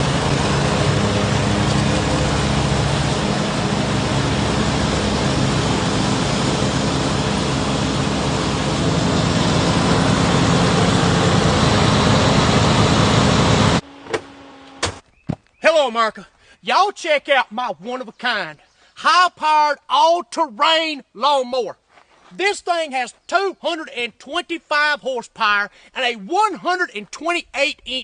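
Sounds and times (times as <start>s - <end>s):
dense rushing noise: 0.0s - 13.8s
vehicle engine running: 0.0s - 14.8s.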